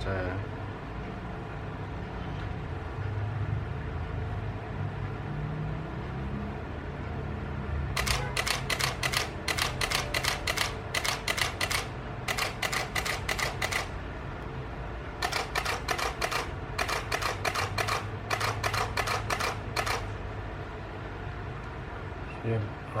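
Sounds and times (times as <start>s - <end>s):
camera shutter bursts: 8.0s - 14.0s, 15.2s - 20.2s.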